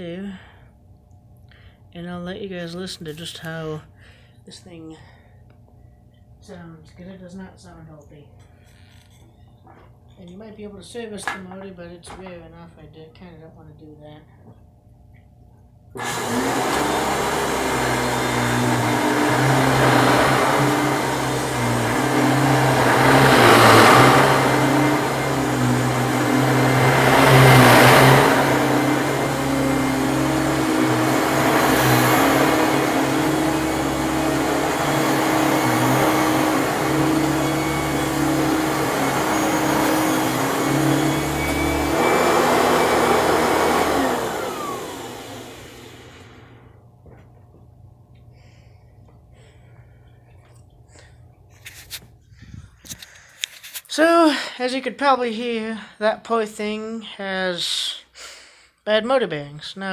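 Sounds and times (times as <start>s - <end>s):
vacuum cleaner motor running: 16.0s - 46.9s.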